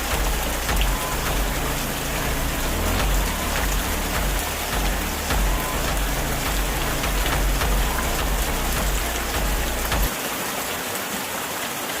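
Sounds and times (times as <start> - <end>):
low rumble: 0.0 - 10.1
heavy rain falling: 0.0 - 12.0.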